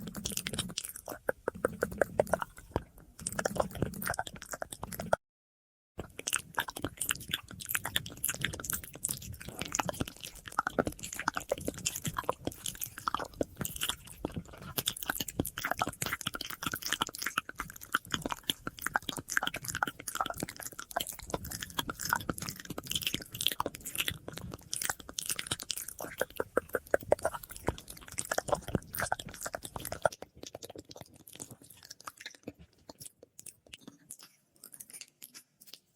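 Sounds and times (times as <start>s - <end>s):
wet mouth clicks and smacks: 0.0s - 5.2s, 6.0s - 35.9s.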